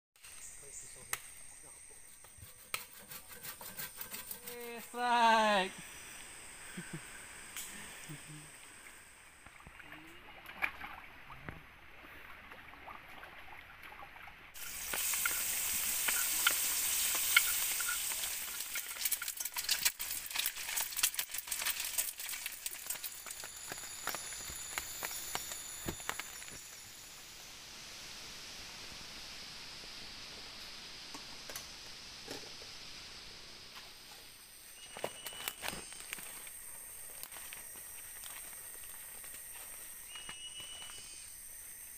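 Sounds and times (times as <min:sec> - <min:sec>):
food sizzling in hot oil: 0:14.6 - 0:33.2.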